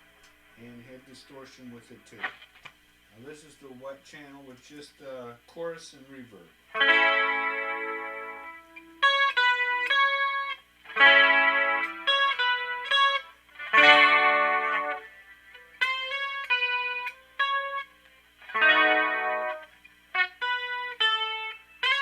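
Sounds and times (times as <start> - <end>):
electric guitar chords and notes: 6.7 - 22.0.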